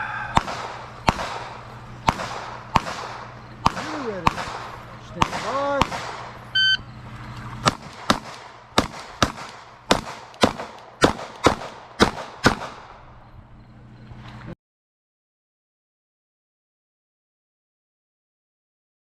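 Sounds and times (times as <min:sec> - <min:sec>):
pistol shots: 0:00.2 - 0:06.5, 0:07.6 - 0:13.0
shot timer beep: 0:06.5 - 0:07.0.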